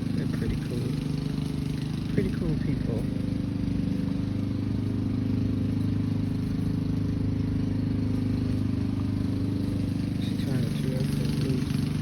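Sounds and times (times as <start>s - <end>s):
lawn mower engine running: 0.0s - 12.0s.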